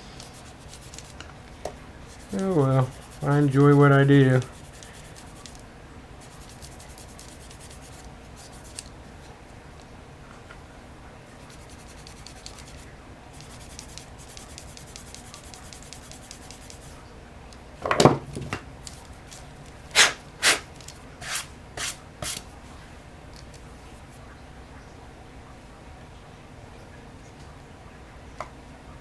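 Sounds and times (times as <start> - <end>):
light rapid rubbing strokes: 0.0 - 1.2, 2.0 - 5.6, 6.2 - 9.4, 11.3 - 17.0, 18.9 - 22.5
short loud scrapes: 19.9 - 22.4.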